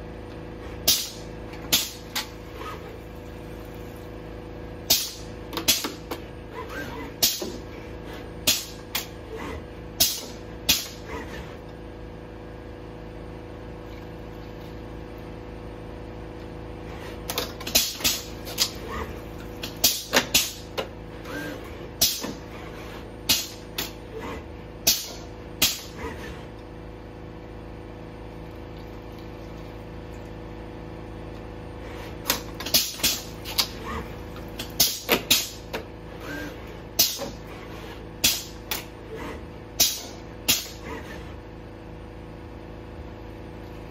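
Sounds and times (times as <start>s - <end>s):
robot arm humming: 18.3s - 20.2s.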